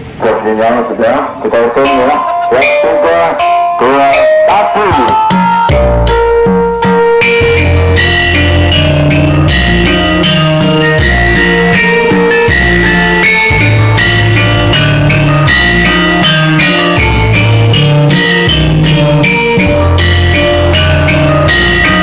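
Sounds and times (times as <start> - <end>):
loud dance music: 1.6 - 22.0.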